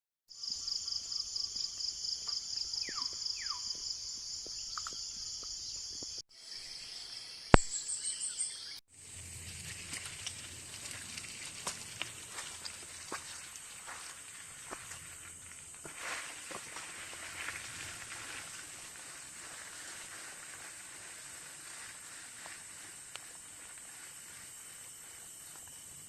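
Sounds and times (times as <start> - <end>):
insects buzzing: 9.0 - 26.0.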